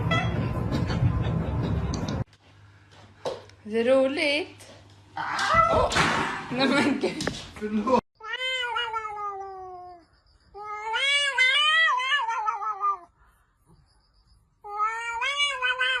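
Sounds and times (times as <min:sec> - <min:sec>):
cat meowing: 0:08.2 - 0:10.0, 0:10.6 - 0:13.1, 0:14.6 - 0:16.0.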